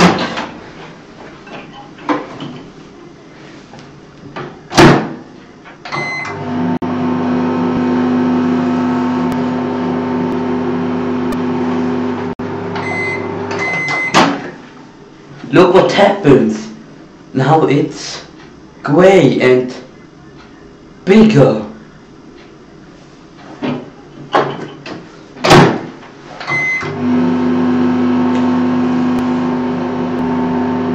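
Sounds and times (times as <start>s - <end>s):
microwave oven humming: 5.8s - 14.2s, 26.5s - 30.9s
keypad beeps: 6.0s - 6.3s, 12.8s - 14.2s, 26.5s - 26.9s.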